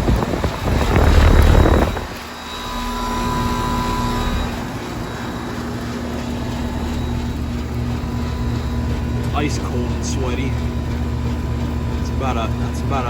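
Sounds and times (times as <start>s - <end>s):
loud rushing noise: 0.0s - 2.3s
heat pump compressor humming: 0.0s - 13.0s.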